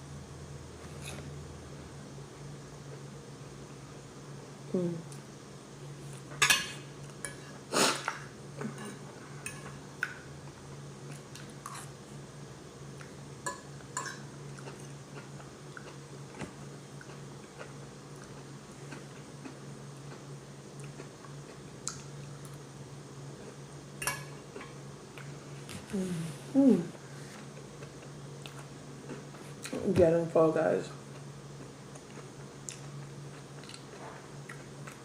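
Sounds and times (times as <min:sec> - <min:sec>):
cutlery clinking on plate: 0:06.4 - 0:07.4
person chewing: 0:14.0 - 0:22.6, 0:27.4 - 0:29.8, 0:31.1 - 0:35.0.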